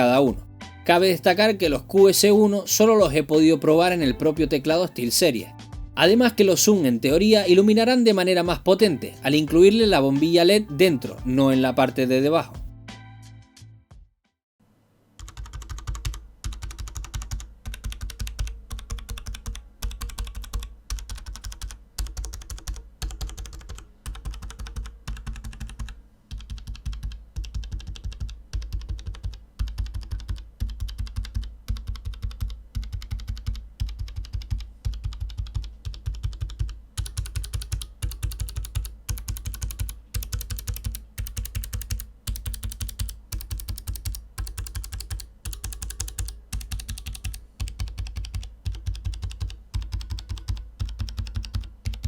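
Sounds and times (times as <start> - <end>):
mechanical keyboard typing: 15.2 - 52.0.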